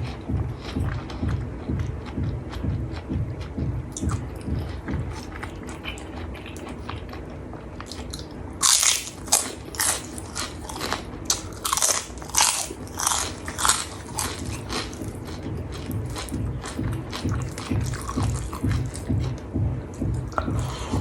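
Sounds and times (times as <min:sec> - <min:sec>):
soft chewing: 0:00.0 - 0:21.0
crisp crunches of crackers: 0:07.8 - 0:19.1.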